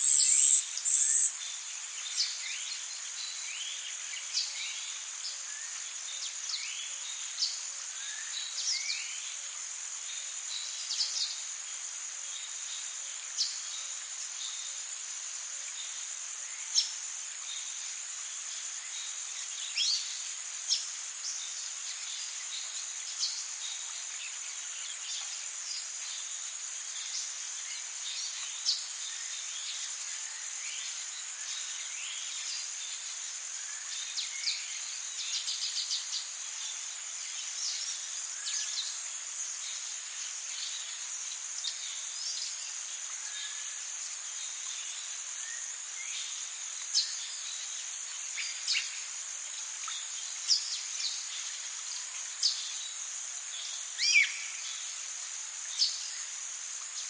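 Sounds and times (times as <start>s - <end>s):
high-pitched insect drone: 0.0s - 1.4s.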